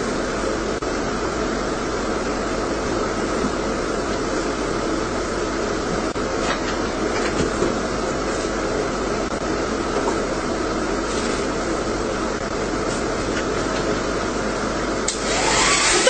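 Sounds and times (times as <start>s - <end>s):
hair dryer blowing: 15.1s - 16.0s.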